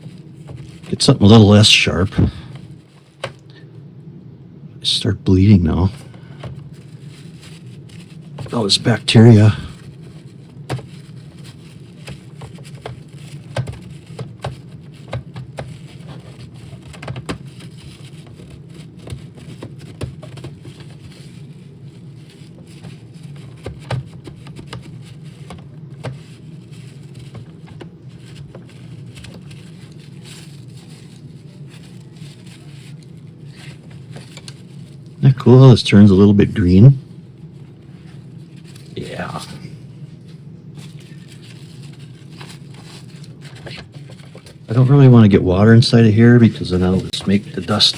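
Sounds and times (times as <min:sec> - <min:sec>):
steady low hum: 0:00.0 - 0:47.9.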